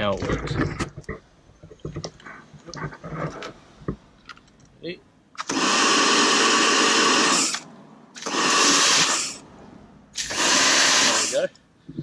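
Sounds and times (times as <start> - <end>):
pressure washer water jet hissing: 5.4 - 7.6, 8.2 - 9.4, 10.2 - 11.5.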